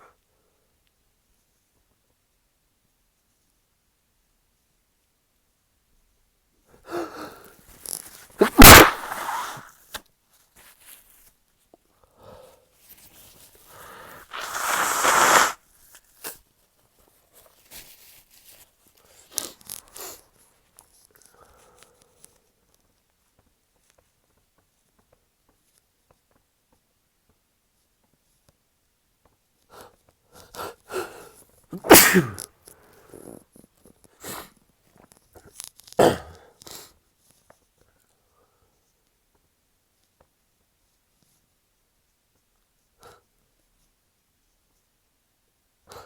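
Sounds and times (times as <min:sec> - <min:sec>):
short breathy sounds: 0:08.4 - 0:09.6, 0:13.9 - 0:15.6
stifled sneeze: 0:08.4 - 0:09.7, 0:14.3 - 0:15.6, 0:31.8 - 0:32.5, 0:36.0 - 0:36.5.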